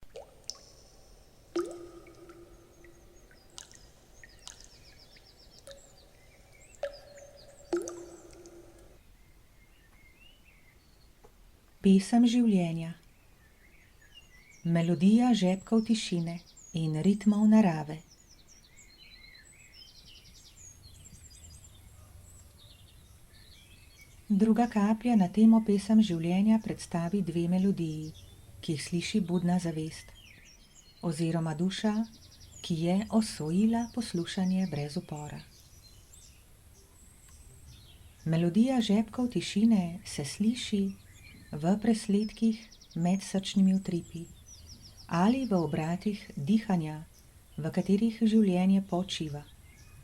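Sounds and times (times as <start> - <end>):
water drops plinking: 0.0 - 9.0
small birds chirping: 0.1 - 50.0
songbirds singing: 0.1 - 50.0.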